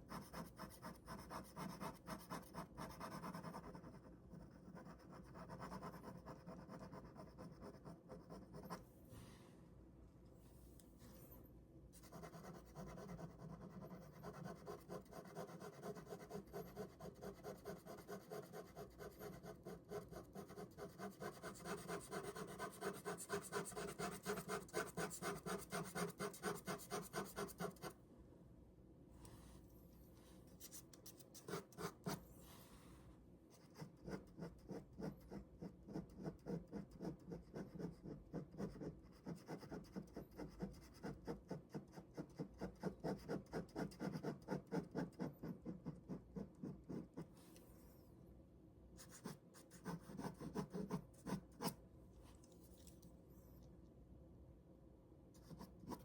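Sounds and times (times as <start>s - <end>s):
pen drawing on paper: 0.1s - 8.8s, 12.0s - 27.9s, 33.7s - 47.2s.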